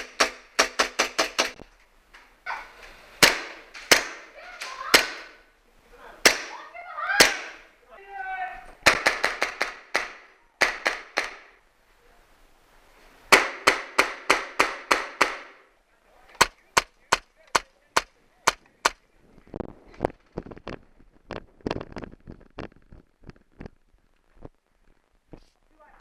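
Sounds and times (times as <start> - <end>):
airsoft guns firing: 0.0 - 1.6, 3.2 - 5.4, 8.8 - 11.6, 13.3 - 15.7, 16.4 - 19.0.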